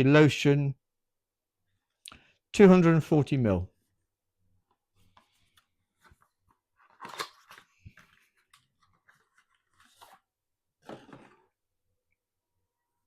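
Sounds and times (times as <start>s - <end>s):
packaging rustling and clicking: 5.1s - 11.4s.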